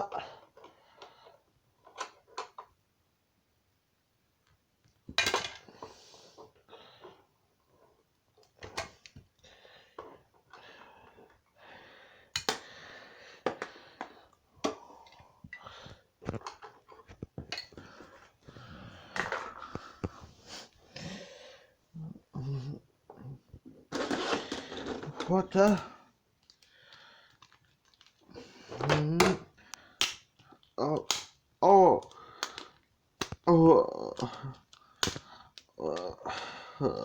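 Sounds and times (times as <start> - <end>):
plastic figures clacking together: 5.1 - 5.7, 12.3 - 12.7, 23.9 - 36.2
breathy noises: 8.7 - 37.0.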